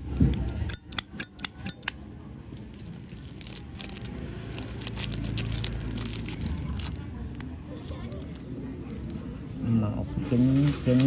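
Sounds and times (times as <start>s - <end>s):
lighter ticks and rattles: 0.7s - 2.0s.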